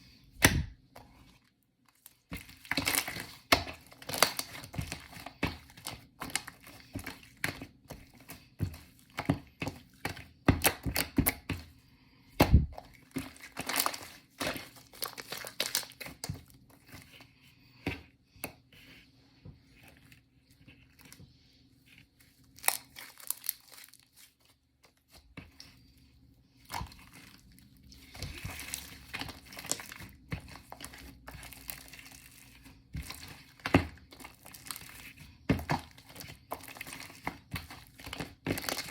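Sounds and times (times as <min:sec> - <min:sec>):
slime crackling and popping: 0:02.5 - 0:06.6, 0:13.2 - 0:16.3, 0:22.6 - 0:24.1, 0:28.2 - 0:38.9.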